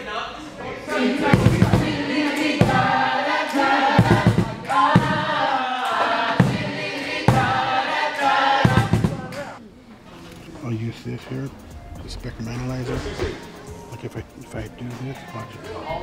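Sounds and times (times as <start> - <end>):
voices singing together: 0.2 - 9.6
low regular thumping beat: 1.1 - 5.4, 6.3 - 7.9, 8.6 - 9.6.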